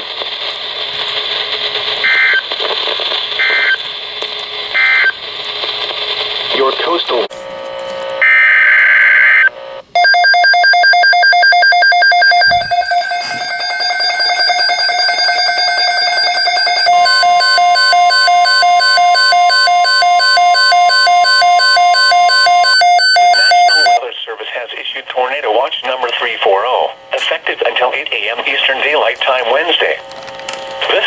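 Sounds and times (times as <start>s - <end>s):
electronic alert beeping and buzzing: 8.2s - 24.0s
steady attention tone: 8.2s - 24.0s.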